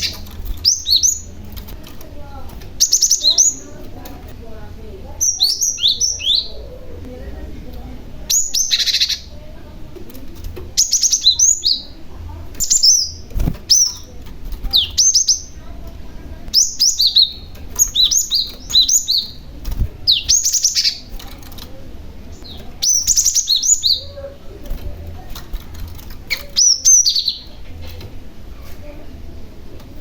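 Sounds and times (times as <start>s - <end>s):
bird high sharp chirps: 0.0s - 1.4s, 2.8s - 3.7s, 5.2s - 6.6s, 8.3s - 9.3s, 10.8s - 12.0s, 12.6s - 14.1s, 14.7s - 15.6s, 16.5s - 19.5s, 20.1s - 21.2s, 22.3s - 24.2s, 26.3s - 27.6s.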